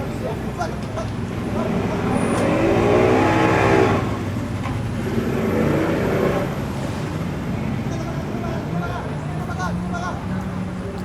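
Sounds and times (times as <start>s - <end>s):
boat engine revving: 1.2s - 7.3s.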